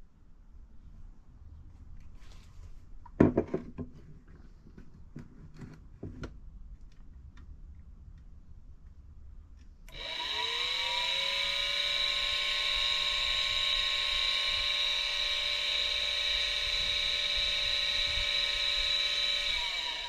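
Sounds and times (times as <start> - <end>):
electric motor whining: 9.9 - 20.0.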